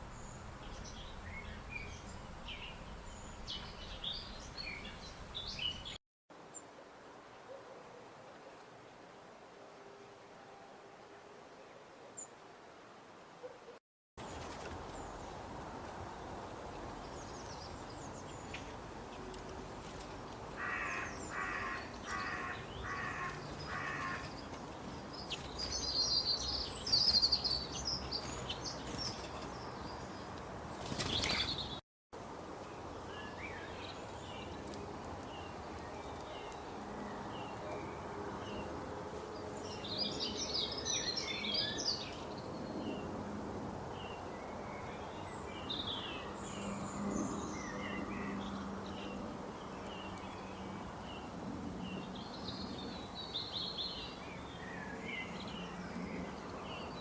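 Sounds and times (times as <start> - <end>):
wild birds chirping: 0.0 - 6.6, 13.4 - 31.8, 43.9 - 57.0
outdoor background hiss: 0.0 - 57.0
bird calls: 20.6 - 29.5.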